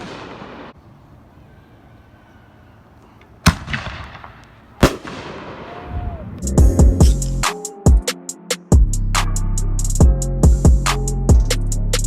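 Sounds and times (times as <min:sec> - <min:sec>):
fireworks bangs with echoing tail: 0:00.0 - 0:00.8, 0:03.5 - 0:06.1.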